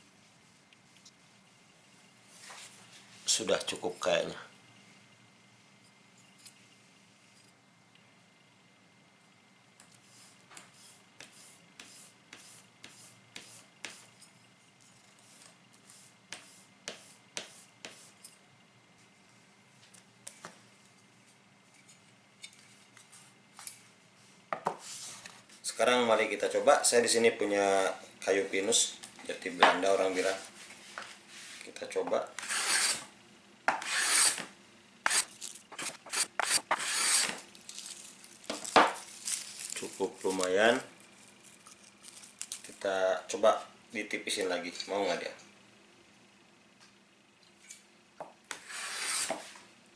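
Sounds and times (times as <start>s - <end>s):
blade scraping on sharpening plate: 32.4s - 33.1s, 33.8s - 34.4s, 35.1s - 37.4s, 48.5s - 49.4s
hand plane shaving wood: 32.4s - 33.1s, 33.8s - 34.5s, 35.1s - 37.4s, 48.5s - 49.6s.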